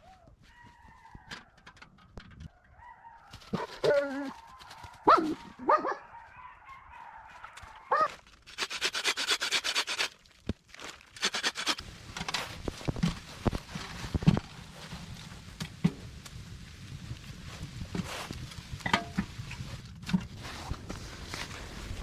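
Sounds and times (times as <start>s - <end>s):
quick rasping strokes: 8.5s - 10.2s, 11.2s - 11.8s.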